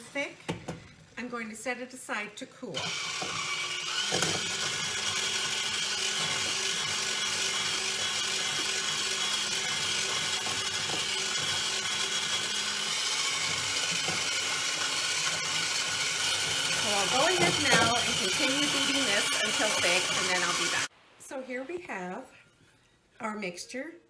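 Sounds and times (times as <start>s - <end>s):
electric hand mixer whipping: 2.7s - 20.9s.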